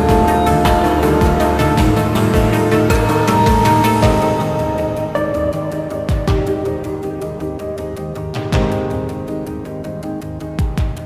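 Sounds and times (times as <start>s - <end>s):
steady beat: 0.0s - 7.1s
held synth notes: 0.0s - 10.7s.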